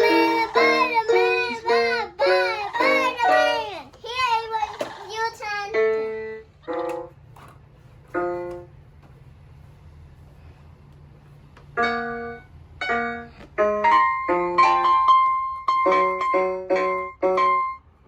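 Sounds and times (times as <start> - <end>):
toy keyboard piano notes: 0.0 - 7.2, 11.8 - 17.9.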